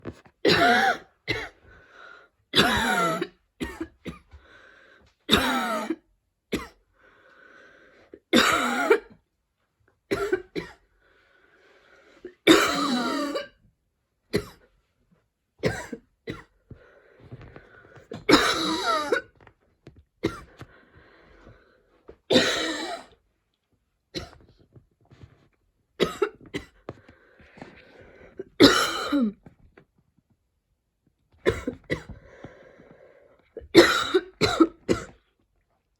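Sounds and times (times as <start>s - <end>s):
woman coughing harshly: 0.4s - 1.6s, 2.6s - 4.3s, 5.3s - 6.8s, 8.3s - 9.1s, 10.1s - 10.8s, 12.4s - 13.6s, 14.4s - 14.6s, 15.6s - 16.5s, 18.1s - 19.4s, 20.2s - 20.5s, 22.3s - 23.1s, 26.0s - 26.8s, 28.6s - 29.4s, 31.4s - 32.2s, 33.6s - 35.2s
strained breaths: 4.3s - 5.2s, 16.7s - 18.3s, 20.4s - 22.2s, 26.9s - 28.5s, 32.1s - 33.6s.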